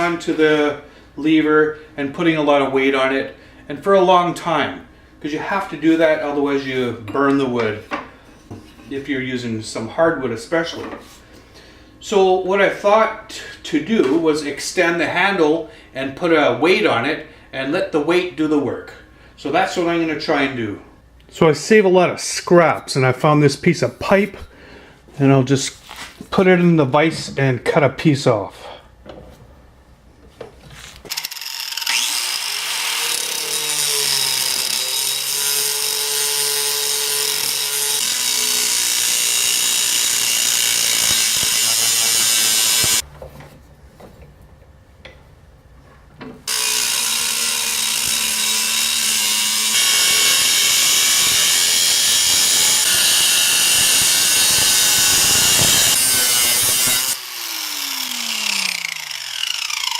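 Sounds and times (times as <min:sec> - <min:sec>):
power tool cutting pipe: 0:31.1 - 0:43.0, 0:46.5 - 0:59.9.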